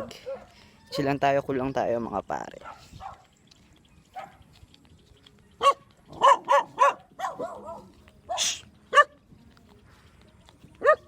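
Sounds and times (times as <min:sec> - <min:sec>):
dog barking: 0:00.0 - 0:00.6, 0:02.6 - 0:03.2, 0:04.2 - 0:04.4, 0:05.6 - 0:09.2, 0:10.8 - 0:11.0.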